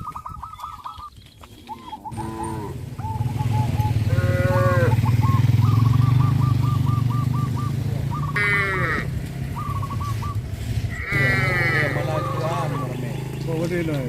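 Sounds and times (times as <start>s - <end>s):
short bleats: 8.4s - 9.1s, 10.9s - 12.4s.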